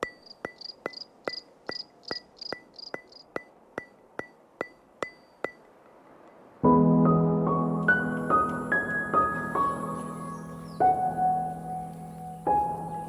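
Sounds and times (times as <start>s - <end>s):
sharp ringing ticks: 0.0s - 5.6s.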